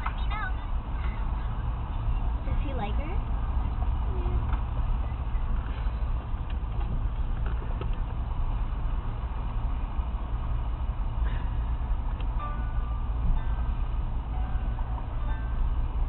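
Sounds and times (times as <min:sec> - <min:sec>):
road traffic rumble: 0:00.0 - 0:16.0
vehicle engines idling: 0:00.0 - 0:16.0.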